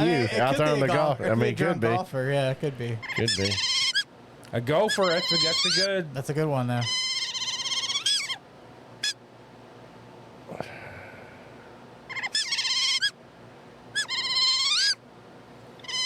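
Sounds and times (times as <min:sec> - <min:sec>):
otter squeaky chirps: 0:03.0 - 0:04.1, 0:04.8 - 0:05.9, 0:06.8 - 0:08.4, 0:12.1 - 0:13.2, 0:13.9 - 0:15.0, 0:15.8 - 0:16.0.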